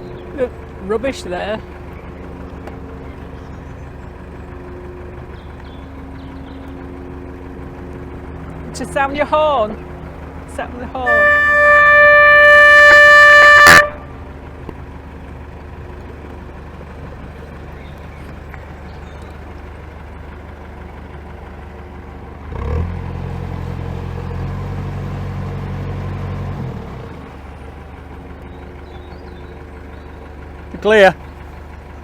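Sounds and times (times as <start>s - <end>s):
diesel engine running: 0.0s - 32.0s
boat horn blast: 11.0s - 14.4s.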